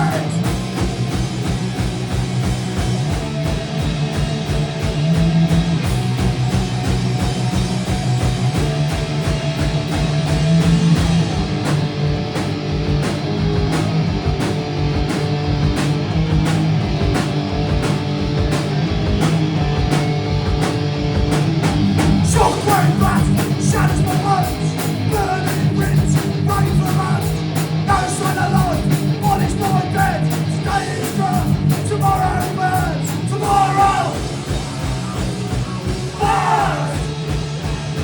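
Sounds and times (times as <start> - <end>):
bass guitar: 0.0 - 38.0
distorted electric guitars: 0.0 - 38.0
fast driving drums: 0.0 - 38.0.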